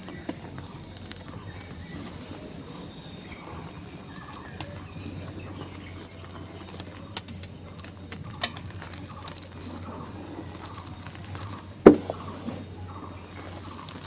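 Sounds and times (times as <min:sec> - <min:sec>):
chalk crunching: 0:11.8 - 0:12.7.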